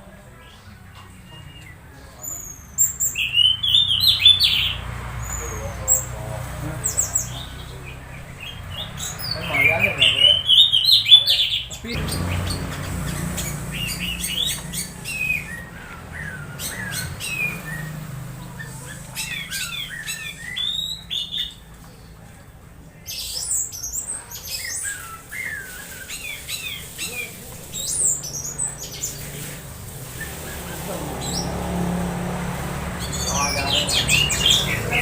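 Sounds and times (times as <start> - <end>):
bird squawky calls: 6.8 - 21.7.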